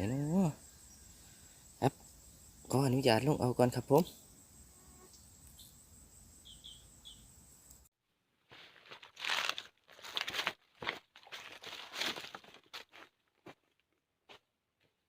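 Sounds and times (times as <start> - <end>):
faint high chirps: 4.1 - 7.8
crunching footsteps: 8.4 - 15.0.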